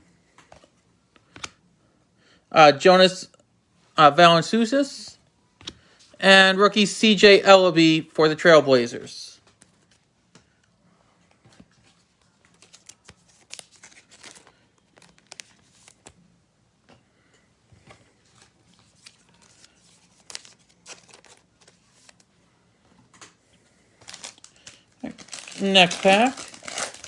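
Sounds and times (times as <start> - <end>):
trading cards and wrapping crinkling: 9.3 - 10.6, 11.2 - 16.2, 17.8 - 22.4, 23.1 - 27.0.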